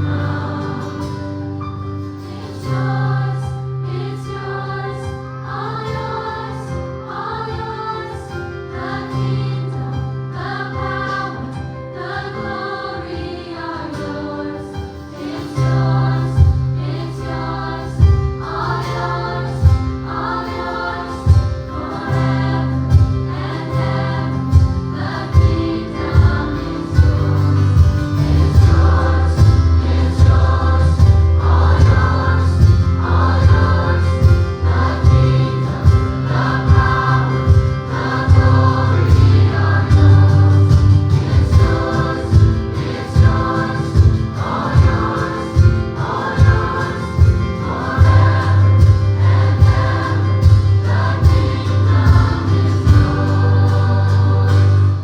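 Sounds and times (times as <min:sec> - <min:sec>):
choir singing gospel: 0:00.0 - 0:55.0
live band with steady bass: 0:15.2 - 0:55.0.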